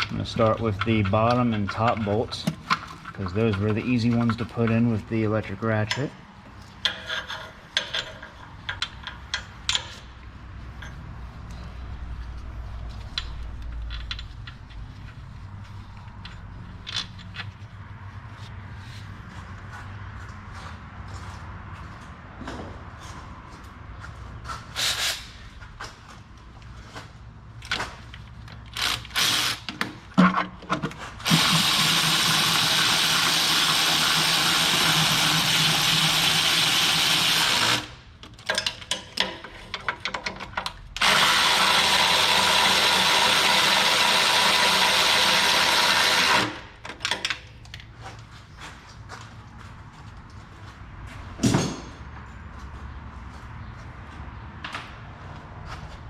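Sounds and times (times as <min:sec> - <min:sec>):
tools clinking: 0:05.8 - 0:10.2, 0:13.0 - 0:15.2, 0:38.2 - 0:40.8
electric ratchet running: 0:28.7 - 0:29.7, 0:31.2 - 0:37.9, 0:41.0 - 0:46.7.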